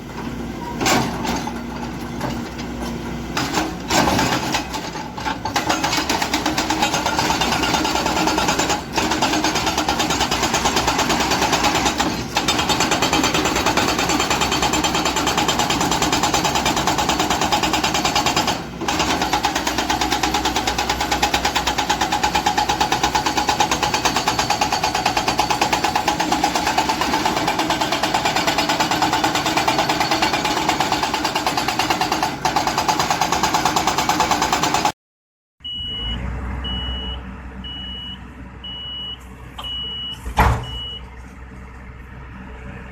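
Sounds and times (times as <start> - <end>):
hydraulic breaker pounding stone: 3.4 - 34.9.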